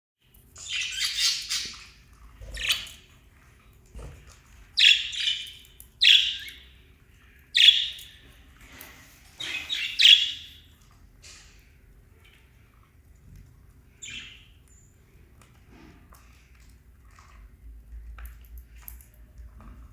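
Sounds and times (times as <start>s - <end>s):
parrots chirping and squawking: 0.6s - 6.7s, 7.5s - 11.6s, 14.0s - 14.5s.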